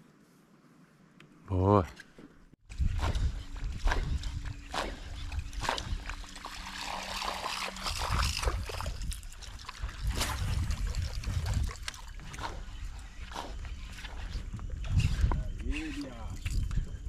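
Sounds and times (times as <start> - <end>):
wind rumble on microphone: 2.6 - 6.5, 7.5 - 17.0
water trickling and splashing: 3.9 - 14.2.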